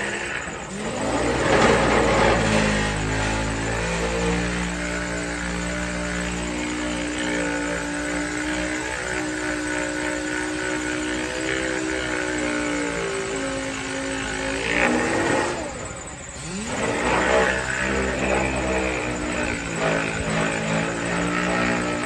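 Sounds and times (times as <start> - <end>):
power sander whining: 0.0 - 22.0.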